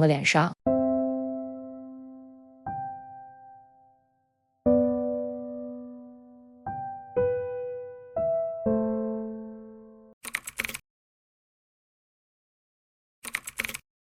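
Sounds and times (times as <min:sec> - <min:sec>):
slow piano notes: 0:00.7 - 0:10.2.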